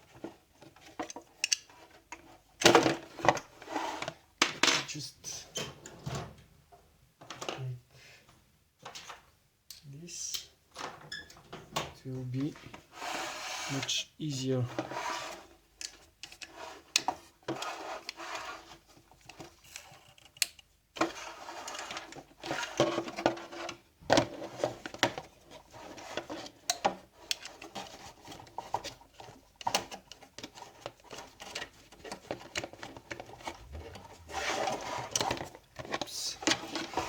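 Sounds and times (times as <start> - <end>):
tools clicking and knocking: 1.0 - 1.6
metal and plastic parts scraping: 14.7 - 37.0.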